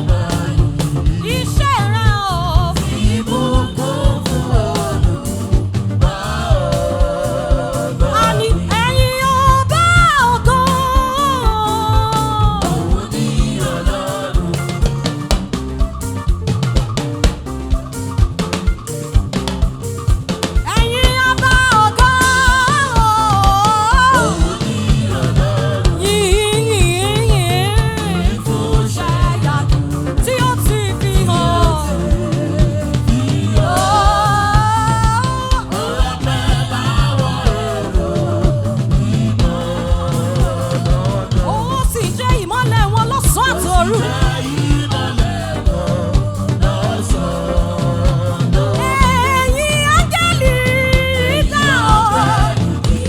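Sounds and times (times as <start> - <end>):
drum kit beat: 0.0 - 53.0
person singing: 20.6 - 53.0.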